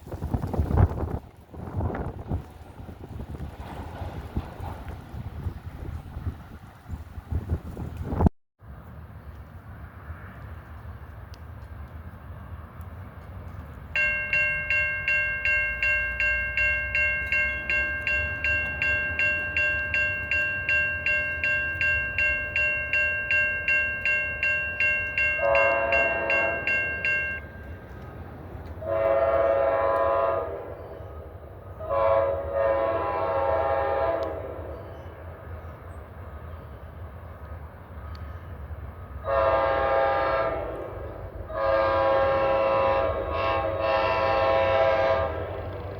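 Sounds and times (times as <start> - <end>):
wind noise: 0.0 - 8.3
crossing bell ringing: 14.0 - 29.8
train air horn blasts: 25.4 - 26.8, 28.8 - 30.8, 31.8 - 34.7, 39.2 - 45.8.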